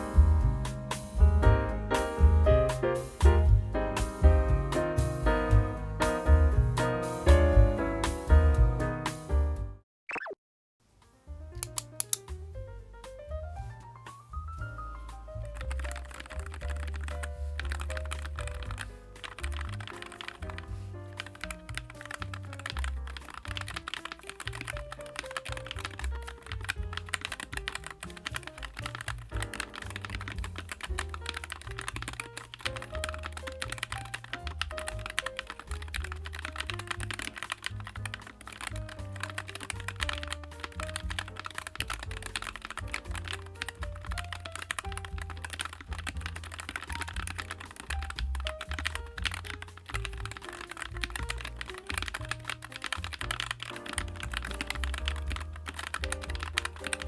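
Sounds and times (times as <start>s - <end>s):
background music with bass: 0.0s - 9.8s, 11.6s - 57.0s
mechanical keyboard typing: 15.4s - 57.0s.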